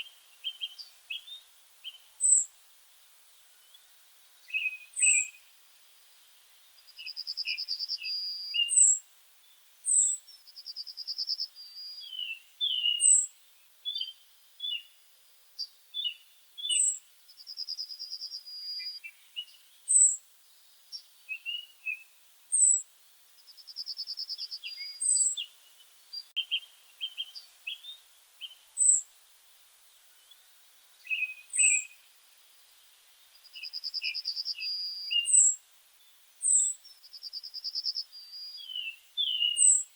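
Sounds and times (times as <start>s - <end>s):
songbirds singing: 0.0s - 39.9s
bird trill: 7.0s - 9.0s, 9.9s - 13.3s, 16.0s - 20.2s, 23.5s - 25.6s, 26.2s - 29.0s, 31.0s - 32.0s, 33.4s - 35.6s, 36.4s - 39.9s.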